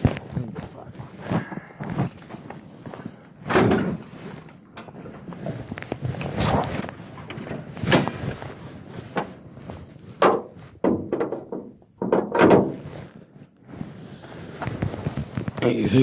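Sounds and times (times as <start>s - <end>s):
knocks and clunks: 3.4s - 4.2s, 4.8s - 8.4s, 9.1s - 12.9s.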